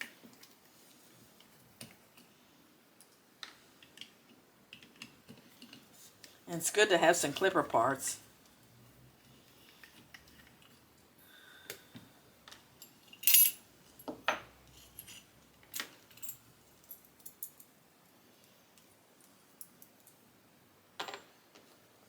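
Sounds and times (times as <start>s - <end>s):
small metal parts clinking: 12.8s - 14.1s.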